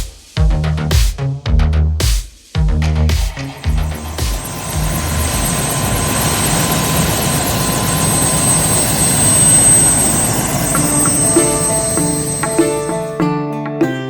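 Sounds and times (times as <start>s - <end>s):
music notes: 3.4s - 14.0s
helicopter rotor and turbine: 3.5s - 13.1s.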